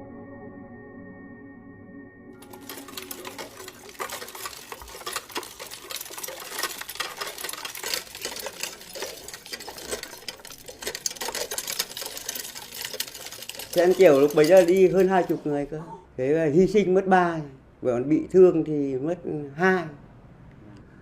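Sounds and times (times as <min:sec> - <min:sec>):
rapid mechanical clattering clicks: 0:02.4 - 0:15.4.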